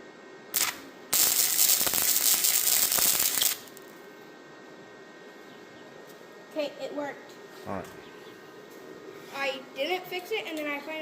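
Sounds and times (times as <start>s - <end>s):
welder arc crackling: 0.5s - 3.9s.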